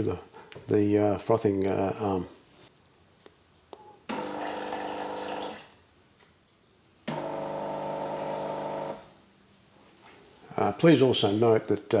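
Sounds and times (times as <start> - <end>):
espresso machine pump humming: 4.1 - 5.7, 7.1 - 9.0.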